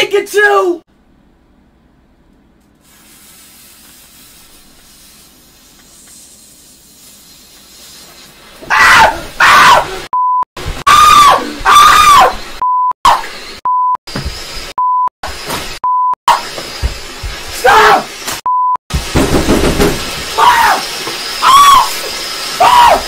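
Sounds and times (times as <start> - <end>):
faint hiss: 2.8 - 8.4
loud screaming: 8.7 - 10.1, 10.8 - 12.5, 17.6 - 18.1, 20.3 - 23.0.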